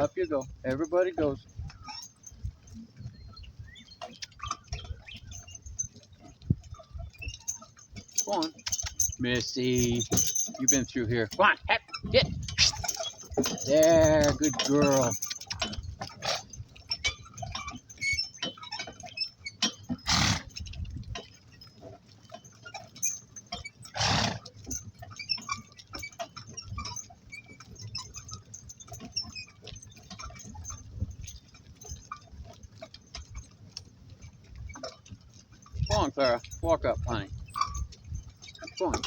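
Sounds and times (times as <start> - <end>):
harness and cart clinking: 0.0 - 39.0
hoofsteps: 0.0 - 39.0
donkey blowing: 23.9 - 24.5.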